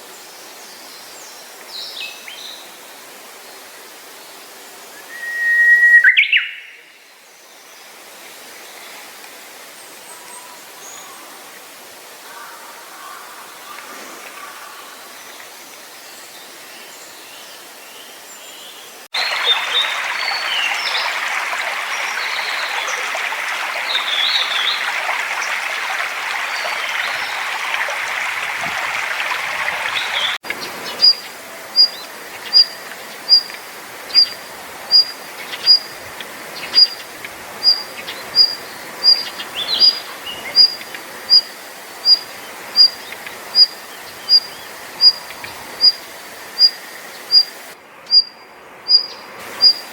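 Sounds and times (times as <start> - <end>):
small songbirds chirping: 4.2 - 7.7, 15.0 - 49.9
stream rushing: 19.0 - 49.9.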